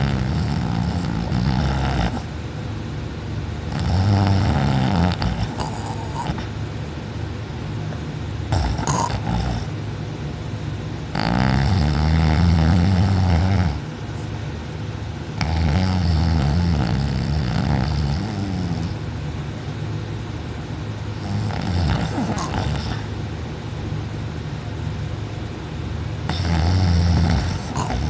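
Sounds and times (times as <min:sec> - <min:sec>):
person snoring loudly: 0:00.0 - 0:02.3, 0:03.7 - 0:06.5, 0:08.5 - 0:09.7, 0:11.2 - 0:13.8, 0:15.4 - 0:19.0, 0:21.2 - 0:23.1, 0:26.3 - 0:28.0.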